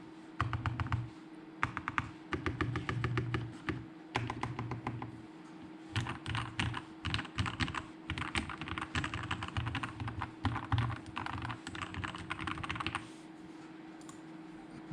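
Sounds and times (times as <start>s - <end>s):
mechanical keyboard typing: 0.4s - 1.0s, 1.6s - 5.1s, 6.0s - 13.0s.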